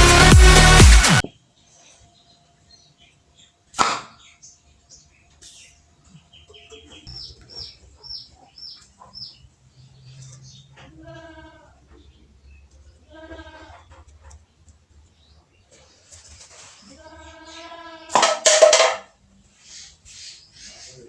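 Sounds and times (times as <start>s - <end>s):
small birds chirping: 1.2s - 18.2s, 19.2s - 21.0s
toy gun pop: 3.8s - 4.1s
goat bleating: 10.7s - 12.1s, 12.9s - 14.1s, 16.6s - 18.4s.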